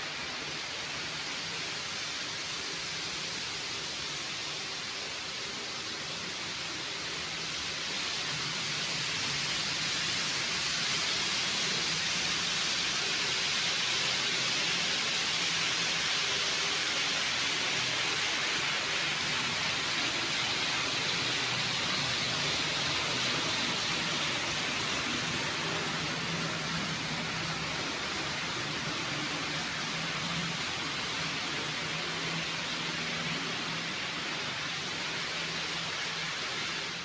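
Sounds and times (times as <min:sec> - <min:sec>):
model train whirring: 0:00.0 - 0:37.0.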